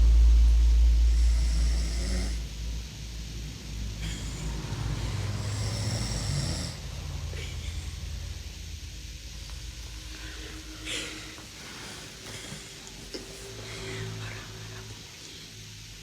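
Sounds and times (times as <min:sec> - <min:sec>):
low rumble: 0:00.0 - 0:15.9
boy snoring: 0:01.1 - 0:02.5, 0:04.0 - 0:07.8.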